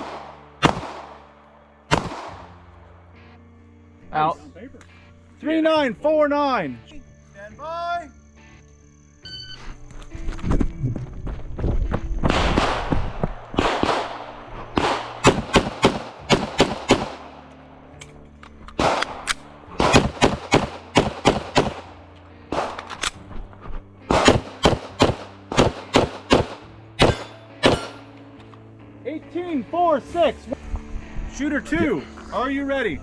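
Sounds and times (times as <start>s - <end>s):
pistol gunshots: 0.0s - 2.6s, 12.3s - 17.5s, 18.8s - 23.1s, 24.1s - 28.1s.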